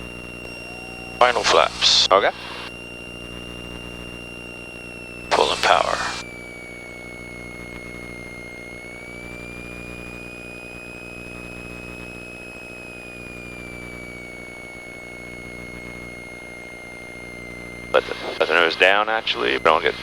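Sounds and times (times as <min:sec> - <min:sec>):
high whine: 0:00.0 - 0:09.3, 0:17.8 - 0:20.0.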